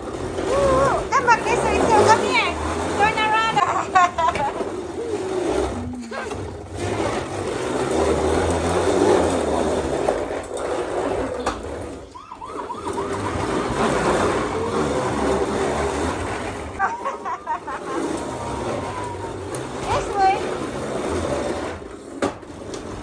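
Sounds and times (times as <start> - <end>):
motor and wheels rumble: 0.0 - 23.0
toy siren wailing: 0.4 - 3.6, 11.9 - 20.2.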